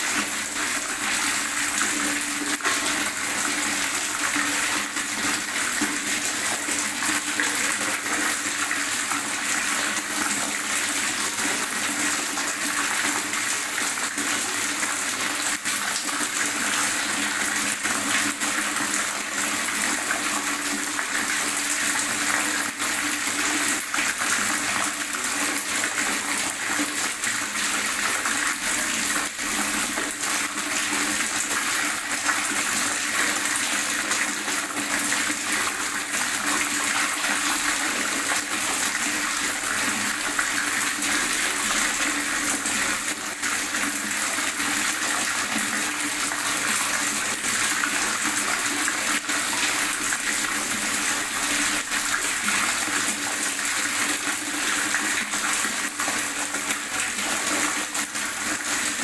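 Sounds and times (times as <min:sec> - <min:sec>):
water gurgling: 0:00.0 - 0:59.0.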